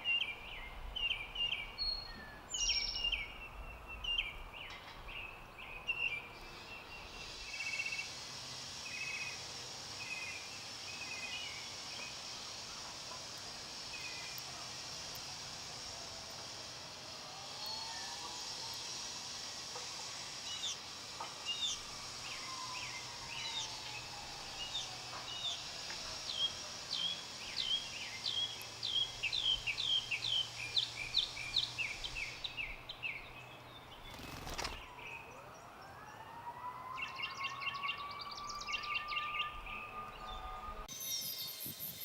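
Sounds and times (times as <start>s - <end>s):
songbird chirping and trilling: 0.0s - 8.1s, 20.4s - 36.2s, 36.8s - 42.0s.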